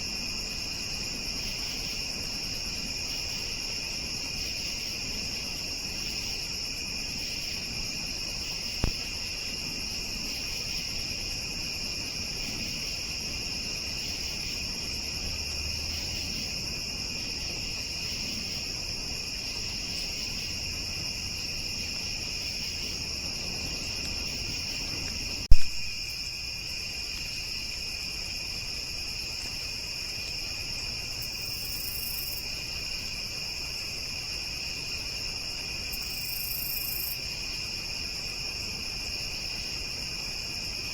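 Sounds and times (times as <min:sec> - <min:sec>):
crickets and insects trilling: 0:00.0 - 0:40.9
sharp click: 0:25.5 - 0:25.8.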